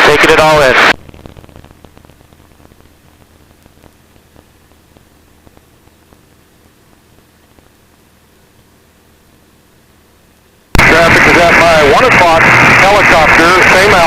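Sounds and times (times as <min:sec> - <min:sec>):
radio static hiss: 0:00.0 - 0:09.4, 0:10.4 - 0:14.0
low steady hum: 0:00.0 - 0:14.0
crackling clicks: 0:00.7 - 0:06.3, 0:06.9 - 0:08.0.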